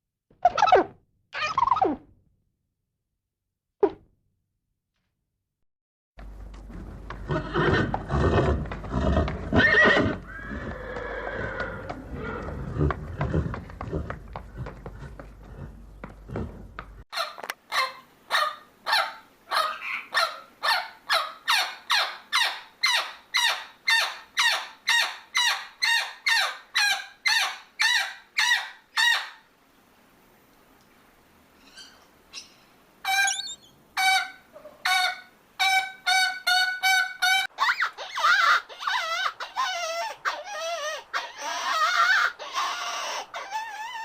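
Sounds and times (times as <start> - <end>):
bird calling: 31.6 - 44.0.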